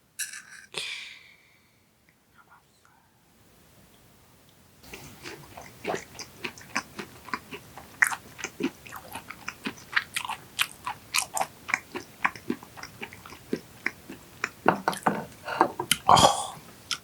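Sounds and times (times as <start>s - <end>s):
wet chewing sounds: 4.8s - 15.0s.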